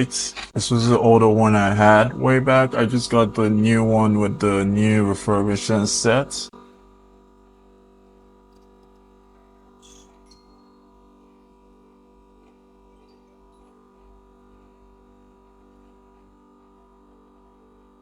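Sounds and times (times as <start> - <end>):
vacuum pump humming: 0.0 - 6.9.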